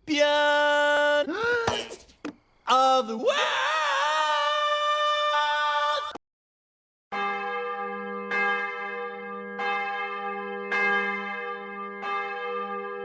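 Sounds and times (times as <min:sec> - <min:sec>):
church bell tolling: 0:07.1 - 0:13.0.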